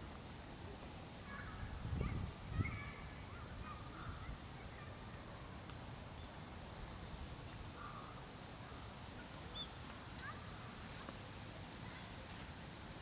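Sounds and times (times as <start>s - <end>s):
distant bird calls: 7.4s - 10.6s.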